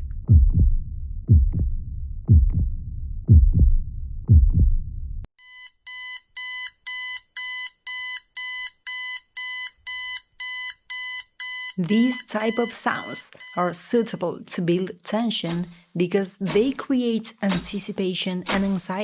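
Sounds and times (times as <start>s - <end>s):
heartbeat thumps: 0.0s - 4.9s, 15.2s - 15.9s, 16.5s - 19.0s
electronic alarm beeping: 5.4s - 15.9s, 16.5s - 19.0s.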